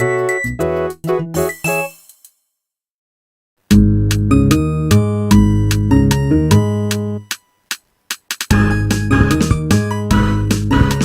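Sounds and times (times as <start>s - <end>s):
synthesized phone ringtone melody: 8.5s - 9.6s.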